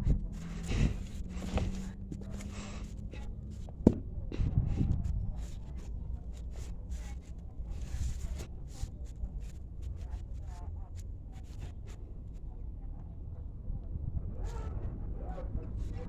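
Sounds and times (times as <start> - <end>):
person breathing heavily: 0.1 - 3.7.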